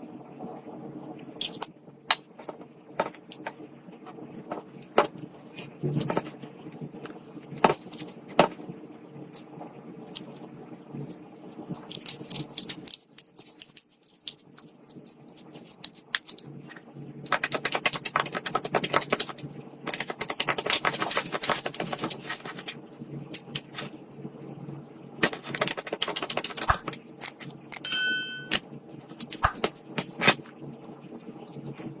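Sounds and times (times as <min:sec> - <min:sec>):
high ringing tone: 0:27.8 - 0:28.6.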